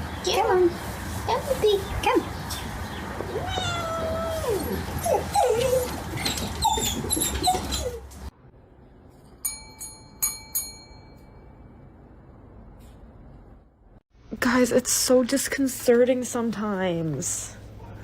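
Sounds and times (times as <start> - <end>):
puppy whining and yelping: 3.7 - 8.2.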